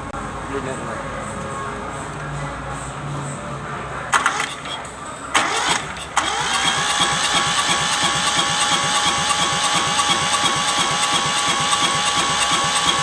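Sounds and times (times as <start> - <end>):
diesel tractor engine cranking: 4.1 - 13.0
diesel tractor engine running: 4.1 - 13.0.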